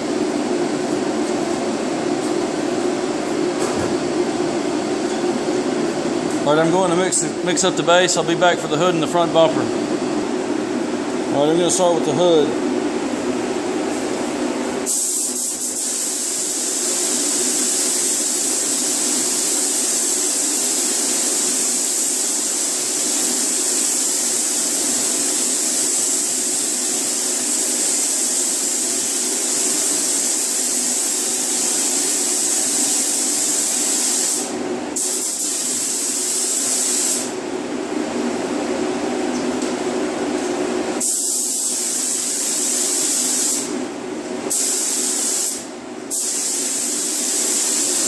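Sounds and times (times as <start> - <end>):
paint spray gun hissing: 14.9 - 37.3, 41.0 - 43.7, 44.5 - 48.0.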